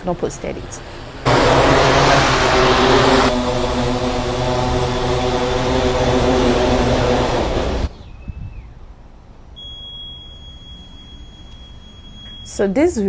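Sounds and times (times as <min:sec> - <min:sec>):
drone propellers whirring: 0:00.3 - 0:07.9
faint steady high tone: 0:09.6 - 0:12.8.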